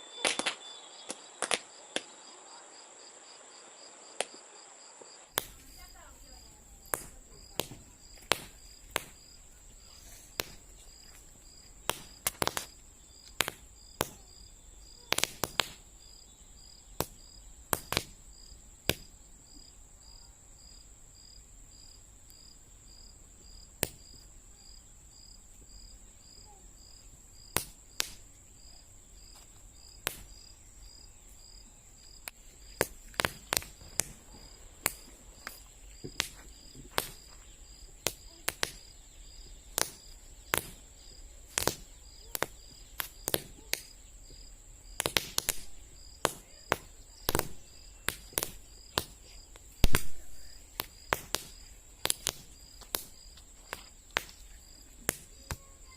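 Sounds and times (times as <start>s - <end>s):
crickets chirping: 0.0s - 55.9s
toy caps popping: 0.2s - 1.7s, 6.8s - 9.3s, 32.2s - 37.3s, 38.1s - 38.9s, 41.5s - 43.9s, 45.0s - 49.2s, 50.8s - 54.4s.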